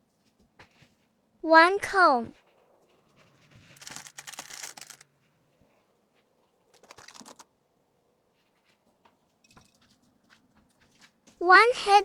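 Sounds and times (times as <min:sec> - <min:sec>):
plastic packaging crinkling: 0:03.6 - 0:05.1, 0:06.7 - 0:07.5.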